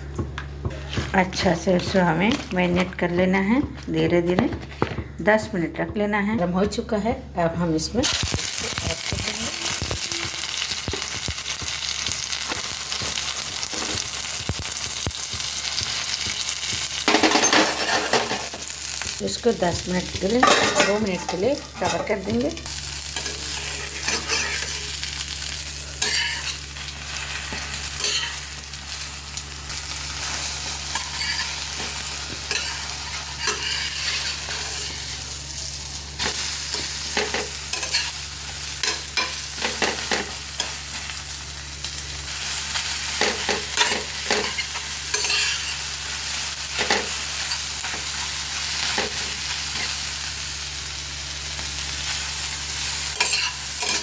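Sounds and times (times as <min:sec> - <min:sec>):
food sizzling in a pan: 0:08.0 - 0:54.0
spatula scraping a pan: 0:30.3 - 0:35.0.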